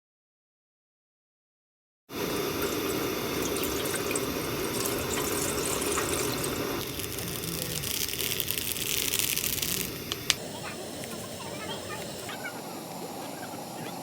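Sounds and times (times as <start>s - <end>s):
water running: 2.1s - 14.0s.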